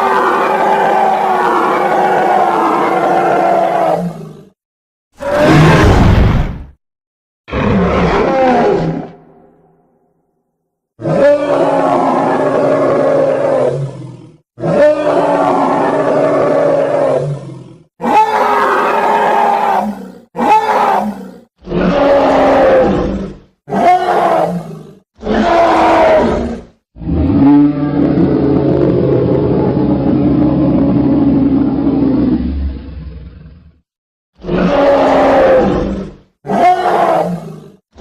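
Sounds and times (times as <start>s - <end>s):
creature bellowing calls: 0.0s - 4.6s, 11.0s - 32.9s, 34.4s - 37.8s
low rumbling creature call: 0.0s - 4.6s, 11.0s - 33.8s, 34.4s - 37.5s.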